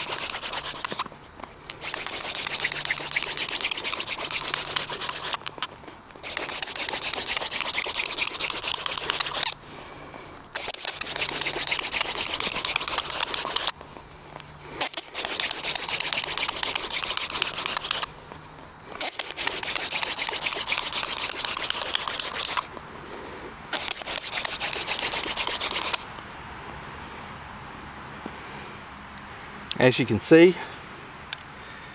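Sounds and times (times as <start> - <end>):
hand drill rubbing wood: 0.0 - 5.6, 6.2 - 9.6, 10.6 - 13.8, 14.8 - 18.1, 19.0 - 22.7, 23.8 - 26.0.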